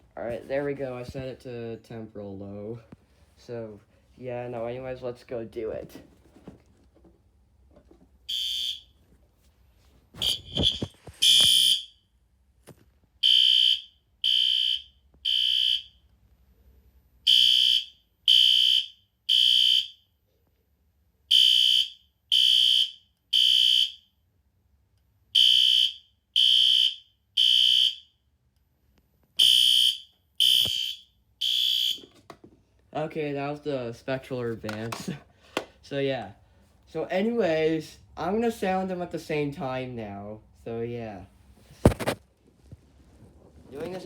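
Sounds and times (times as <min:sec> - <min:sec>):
high alarm horn blasts: 0:08.3 - 0:09.0, 0:10.2 - 0:12.0, 0:13.2 - 0:15.9, 0:17.3 - 0:20.0, 0:21.3 - 0:24.0, 0:25.4 - 0:28.0, 0:29.4 - 0:32.1.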